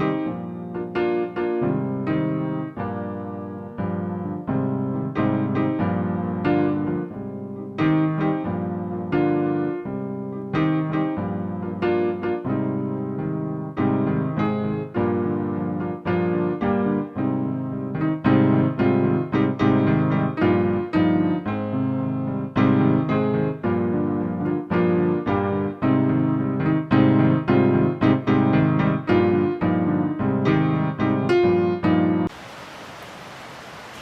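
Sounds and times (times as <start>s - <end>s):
slow piano piece: 0.0s - 32.3s.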